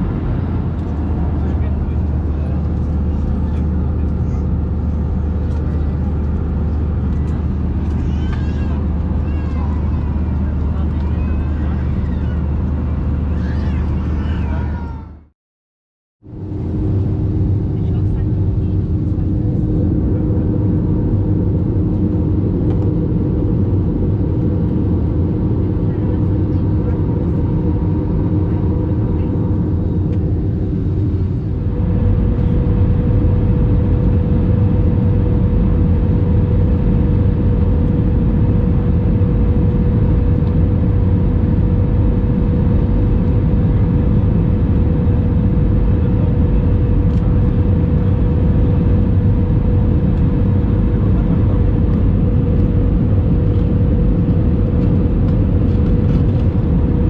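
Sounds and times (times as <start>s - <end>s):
jet engines and airflow hum: 0.0s - 15.3s, 16.2s - 57.0s.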